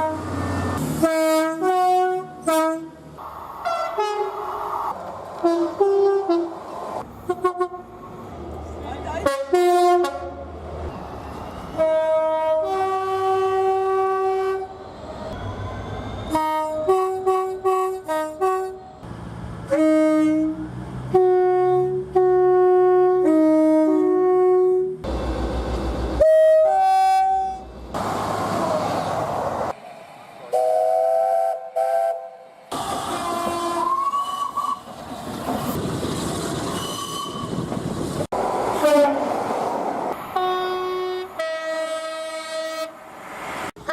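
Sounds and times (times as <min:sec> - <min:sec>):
train horns: 0:00.0 - 0:03.0, 0:03.6 - 0:04.7, 0:05.4 - 0:06.6, 0:07.2 - 0:08.0, 0:09.2 - 0:10.5, 0:11.7 - 0:14.8, 0:16.3 - 0:18.9, 0:19.7 - 0:25.0, 0:26.2 - 0:27.7, 0:30.5 - 0:32.5, 0:33.1 - 0:34.9, 0:38.8 - 0:39.3, 0:40.3 - 0:43.0
trains running on rails: 0:00.0 - 0:43.9.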